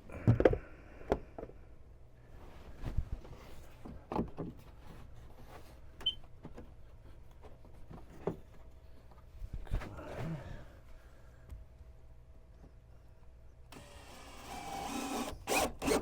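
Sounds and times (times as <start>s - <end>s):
small power tool whir: 13.7s - 16.0s.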